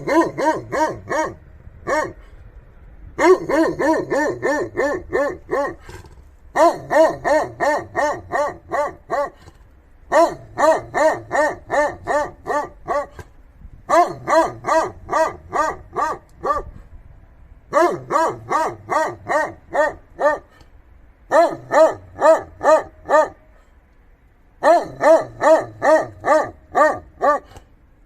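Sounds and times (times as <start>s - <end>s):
dog barking: 0.0s - 2.2s, 3.2s - 5.9s, 6.5s - 9.4s, 10.1s - 13.2s, 13.9s - 16.8s, 17.7s - 20.6s, 21.3s - 23.4s, 24.6s - 27.6s.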